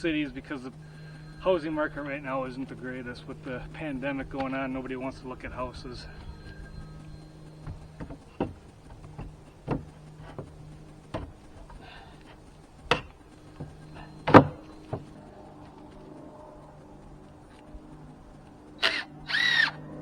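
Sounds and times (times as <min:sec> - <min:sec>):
faint low hum: 0:00.0 - 0:20.0
wooden boards knocking: 0:07.6 - 0:11.8, 0:12.9 - 0:15.1.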